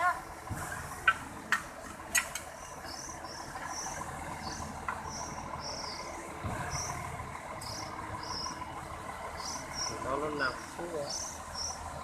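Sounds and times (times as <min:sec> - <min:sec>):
insects chirping: 0:02.5 - 0:07.0, 0:07.6 - 0:10.0, 0:11.1 - 0:11.8.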